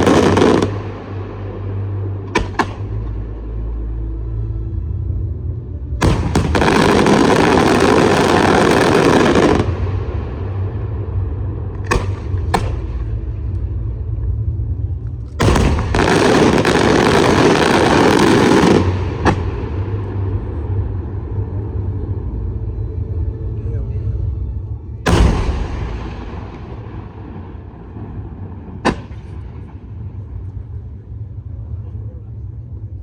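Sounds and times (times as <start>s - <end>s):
fireworks bangs: 0.0s - 1.0s, 6.0s - 10.6s, 15.4s - 20.0s, 25.1s - 30.2s
fireworks crackling: 0.0s - 1.1s, 6.0s - 10.8s, 15.4s - 20.5s
steady low rumble: 0.0s - 33.0s.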